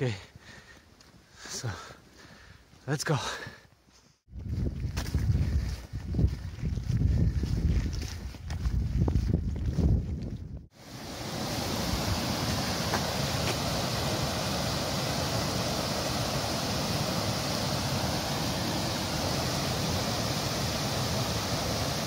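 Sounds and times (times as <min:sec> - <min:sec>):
running water rushing: 0:10.8 - 0:22.0.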